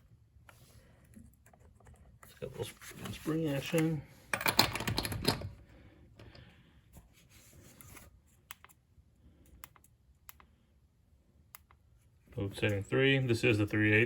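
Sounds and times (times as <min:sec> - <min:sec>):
metal sockets clicking: 0:03.8 - 0:05.6.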